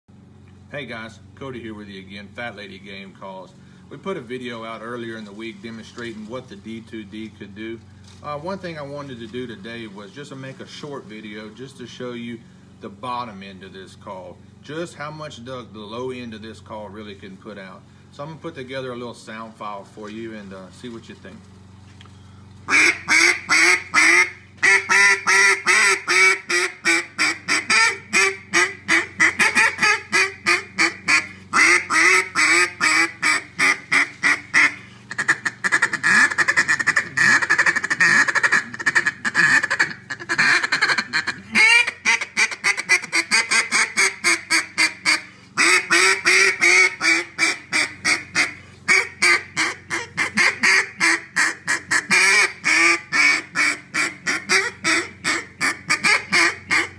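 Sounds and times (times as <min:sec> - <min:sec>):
duck call quacking: 0:22.7 - 0:56.9.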